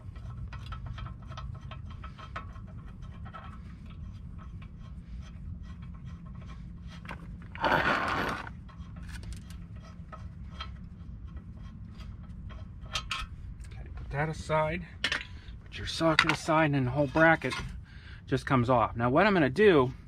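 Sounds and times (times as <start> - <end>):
socket wrench clicks and scrapes: 0.0 - 13.8.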